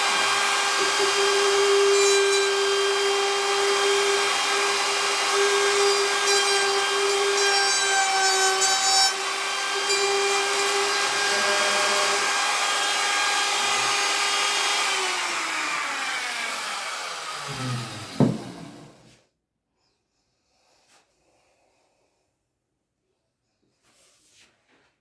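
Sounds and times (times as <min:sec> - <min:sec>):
power tool motor humming: 0:00.0 - 0:19.1.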